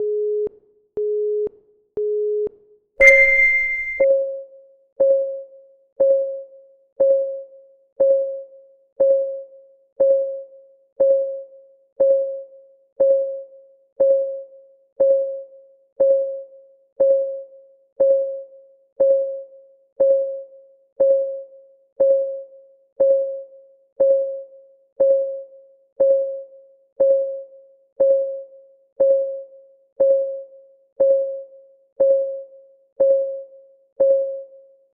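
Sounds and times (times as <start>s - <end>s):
brief high tone: 3.0s - 4.1s
countdown timer ticking: 3.0s - 4.1s
lead-in beep: 3.0s - 4.1s.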